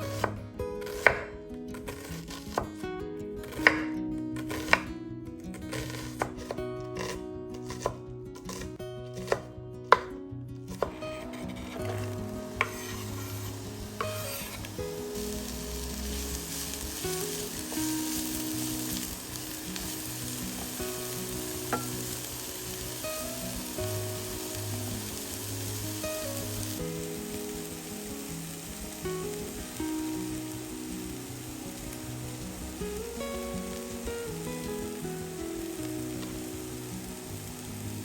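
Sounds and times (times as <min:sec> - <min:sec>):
soft background music: 0:00.0 - 0:38.0
knife chopping on cutting board: 0:00.2 - 0:01.3, 0:03.4 - 0:04.8, 0:05.7 - 0:10.1, 0:10.7 - 0:13.4, 0:14.0 - 0:14.6
food frying in hot oil: 0:12.6 - 0:38.0.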